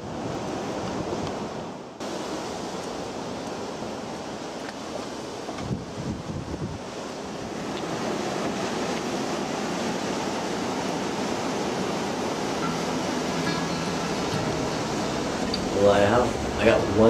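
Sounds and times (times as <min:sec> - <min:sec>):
ocean surf washing: 0:00.0 - 0:17.0
wind noise on microphone: 0:05.0 - 0:17.0.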